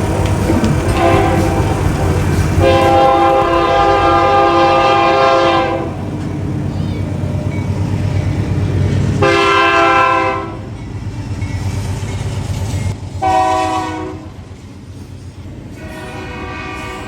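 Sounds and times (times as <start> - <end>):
locomotive air horn blasts: 0.0 - 6.1, 9.2 - 10.7, 13.2 - 14.4, 15.8 - 17.0
train rumble: 0.0 - 17.0.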